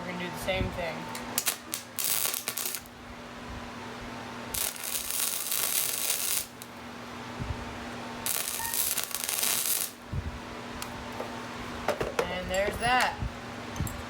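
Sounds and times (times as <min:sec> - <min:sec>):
welding arc crackling and hissing: 0:01.3 - 0:03.0, 0:04.5 - 0:06.8, 0:08.2 - 0:10.2.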